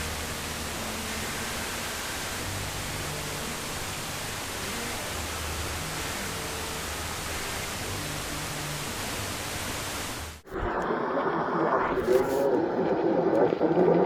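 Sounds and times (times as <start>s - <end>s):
radio static hiss: 9.9s - 14.0s.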